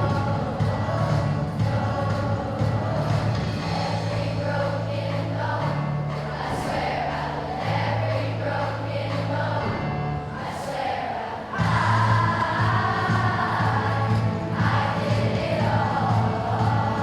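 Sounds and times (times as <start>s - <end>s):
held bass notes: 0.0s - 10.5s, 11.6s - 17.0s
voices singing: 0.0s - 17.0s.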